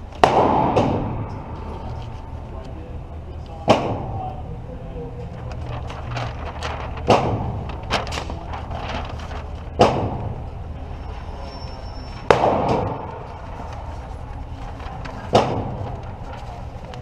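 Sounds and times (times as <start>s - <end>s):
faint gunshots: 0.2s - 1.3s, 7.0s - 7.6s, 9.8s - 10.4s, 12.3s - 13.1s, 15.3s - 15.8s
loud gunshots echoing: 0.2s - 1.7s, 3.6s - 4.2s, 7.0s - 7.7s, 9.8s - 10.5s, 12.3s - 13.3s, 15.3s - 16.0s.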